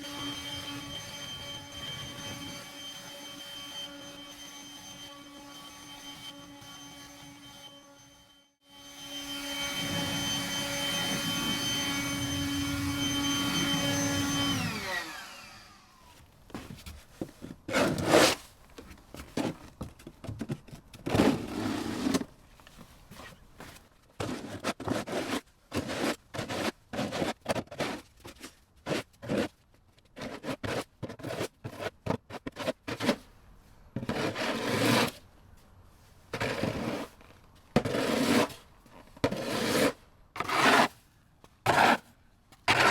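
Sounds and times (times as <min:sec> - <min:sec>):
motor whining and winding down: 0:00.0 - 0:16.2
irregular scraping strokes: 0:35.9 - 0:41.1.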